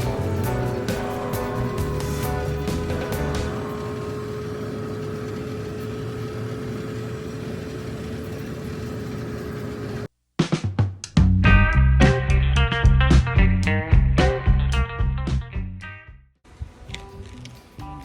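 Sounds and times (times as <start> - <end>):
vehicle running with whine: 0.0 - 10.1
plucked music notes: 11.4 - 16.2.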